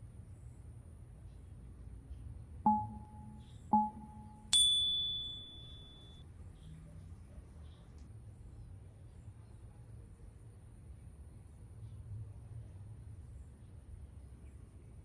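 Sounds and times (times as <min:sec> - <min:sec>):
higher bell tone ringing: 0:02.7 - 0:06.2
low ding tones: 0:02.7 - 0:06.2.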